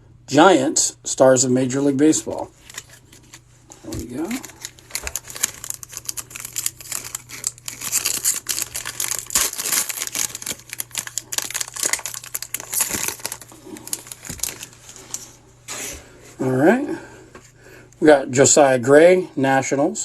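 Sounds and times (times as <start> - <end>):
foil wrapper crinkling: 2.3 - 15.4.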